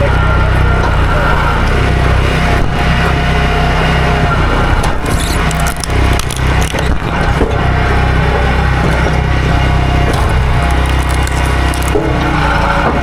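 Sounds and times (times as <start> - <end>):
chainsaw cutting wood: 1.5 - 13.0.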